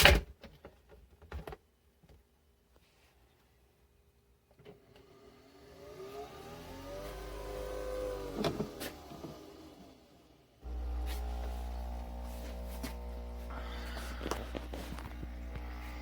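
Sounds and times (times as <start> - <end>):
coffee machine motor whirring: 5.0 - 16.0.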